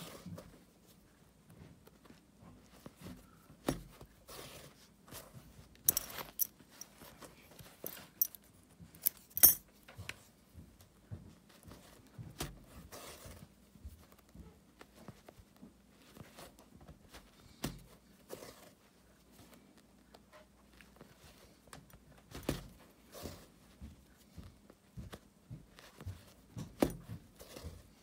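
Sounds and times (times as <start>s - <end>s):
handling clicks and rustles: 0.0s - 12.8s
light metallic jingles: 7.6s - 9.6s.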